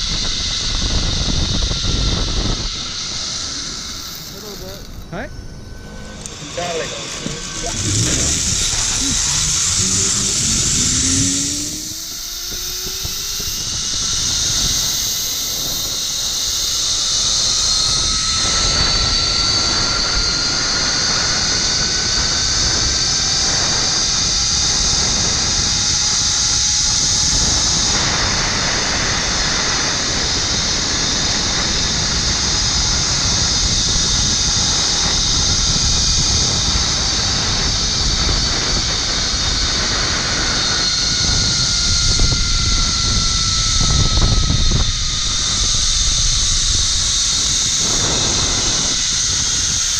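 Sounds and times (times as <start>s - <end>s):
pulleys whining on steel cable: 0.0s - 49.9s
wind rushing over microphone: 0.0s - 49.9s.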